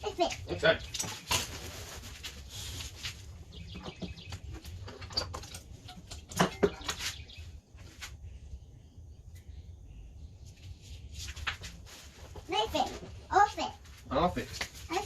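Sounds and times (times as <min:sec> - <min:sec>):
rushing rustling noise: 0:01.2 - 0:03.4.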